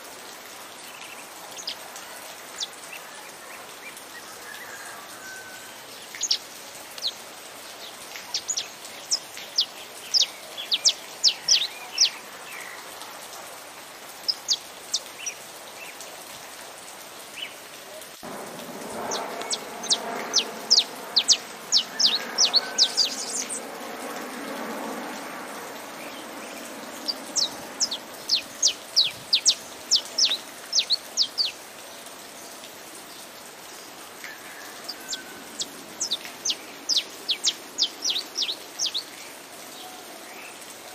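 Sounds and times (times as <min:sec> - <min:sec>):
steady rain: 0:00.0 - 0:40.9
low wash of sound: 0:18.2 - 0:31.5
finch singing high notes: 0:19.0 - 0:23.8.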